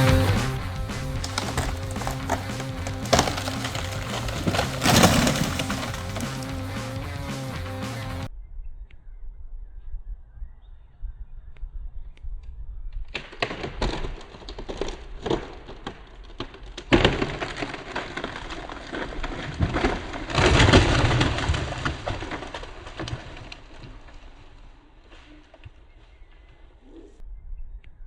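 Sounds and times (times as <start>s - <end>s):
tree crashing down: 0.0s - 8.2s, 13.2s - 25.0s
wood cracking and branches snapping: 0.4s - 7.7s, 12.9s - 26.3s.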